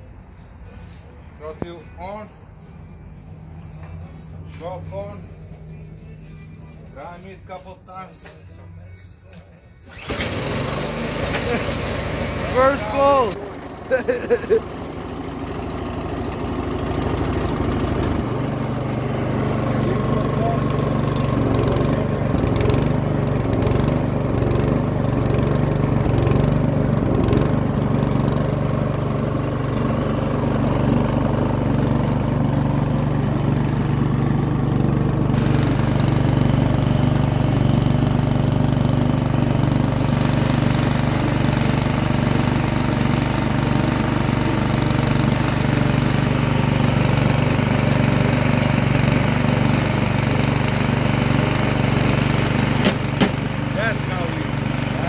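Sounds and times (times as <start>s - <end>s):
snowblower engine running: 9.8s - 55.0s.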